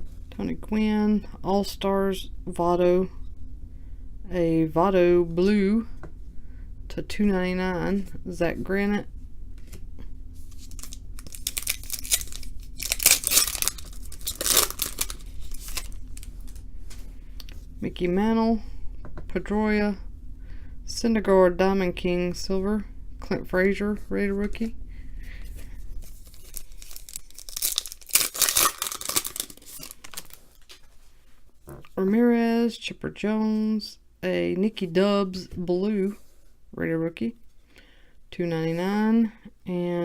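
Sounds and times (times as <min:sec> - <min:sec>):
wrapper tearing and crinkling: 0:10.5 - 0:16.6, 0:26.0 - 0:30.7.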